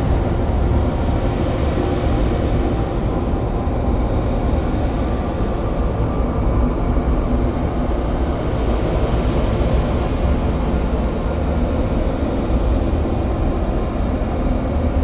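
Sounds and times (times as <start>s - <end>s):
low rumbling drone music: 0.0s - 6.8s.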